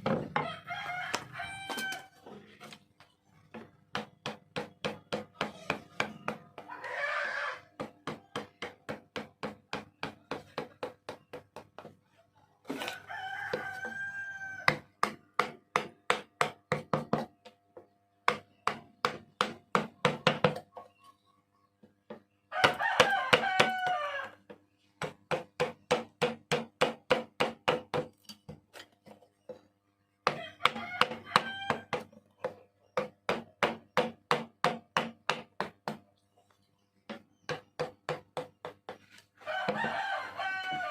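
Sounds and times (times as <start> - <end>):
rooster crowing: 0.4 - 2.2, 6.7 - 7.7, 12.8 - 14.8, 22.5 - 24.4, 30.3 - 32.0, 39.4 - 40.9.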